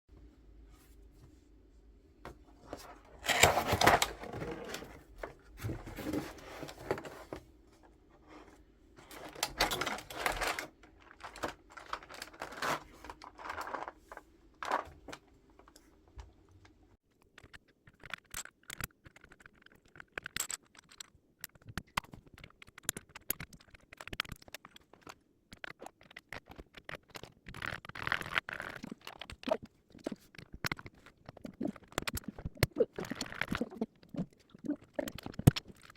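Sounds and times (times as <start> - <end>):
packaging rustling and tearing: 3.2 - 7.4, 9.0 - 15.8
small plastic clicks and taps: 17.2 - 34.2.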